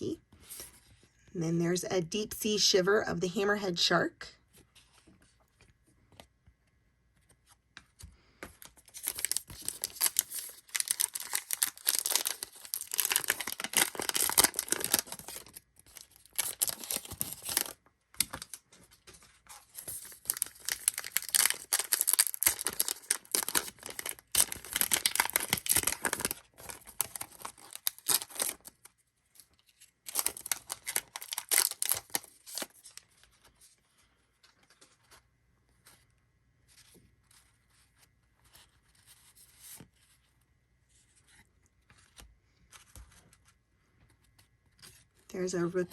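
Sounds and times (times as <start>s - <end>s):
card pack wrappers crinkling: 8.6s - 33.6s.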